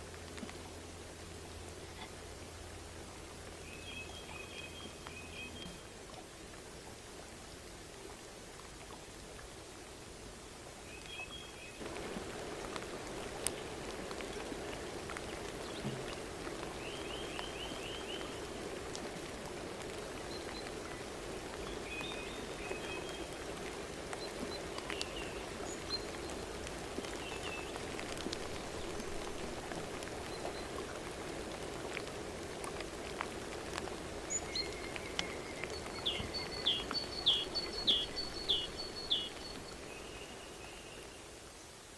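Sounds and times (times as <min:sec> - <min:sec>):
birds calling: 0:34.3 - 0:40.6.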